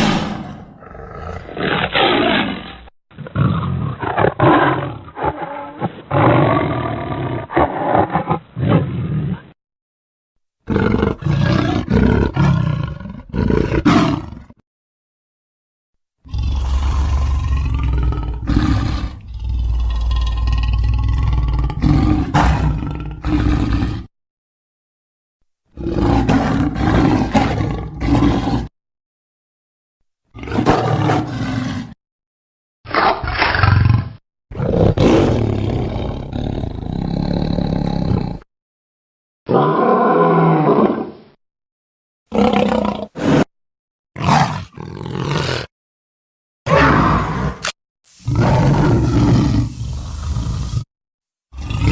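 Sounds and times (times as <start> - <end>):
big cat roars and growls: 0.0 - 9.6, 10.6 - 14.6, 16.2 - 24.1, 25.7 - 28.7, 30.3 - 32.0, 32.9 - 38.5, 39.5 - 41.4, 42.3 - 43.5, 44.2 - 45.7, 46.7 - 50.9, 51.5 - 51.9.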